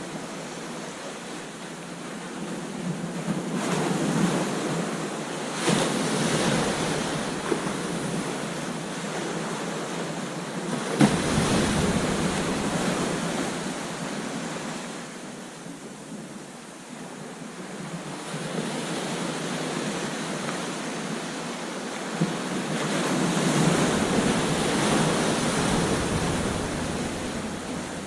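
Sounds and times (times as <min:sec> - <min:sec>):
ocean surf breaking: 0:03.7 - 0:16.0, 0:22.4 - 0:28.0
foam washing and receding: 0:11.0 - 0:14.6, 0:23.3 - 0:28.0.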